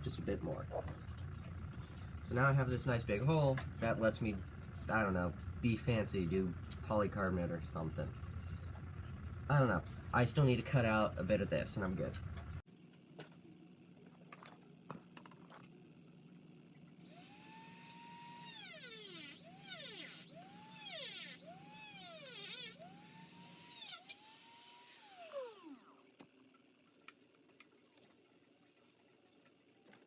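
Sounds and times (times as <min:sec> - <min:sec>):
rotary tool cutting plastic: 0:17.0 - 0:26.0.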